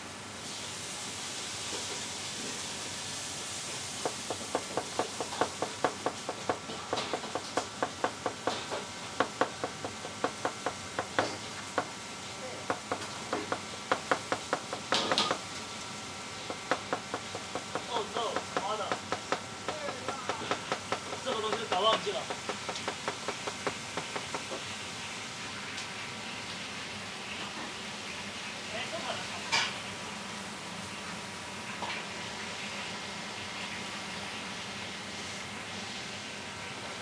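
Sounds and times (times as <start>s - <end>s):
knife chopping on cutting board: 4.0s - 12.0s, 12.6s - 15.4s, 16.5s - 24.6s.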